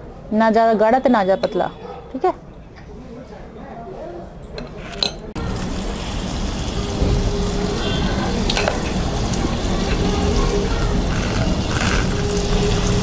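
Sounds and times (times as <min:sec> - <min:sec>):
batter sizzling in hot oil: 0:05.4 - 0:13.0.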